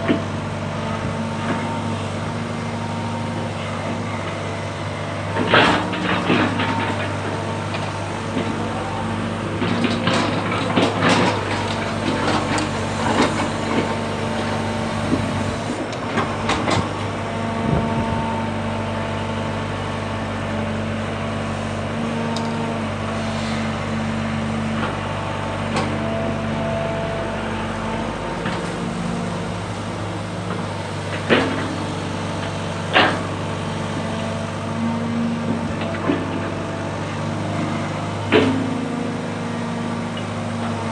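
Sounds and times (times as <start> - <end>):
excavator diesel engine running: 0.0 - 40.9
machine knocks and clanks: 9.5 - 14.1, 30.4 - 33.3, 38.2 - 38.8.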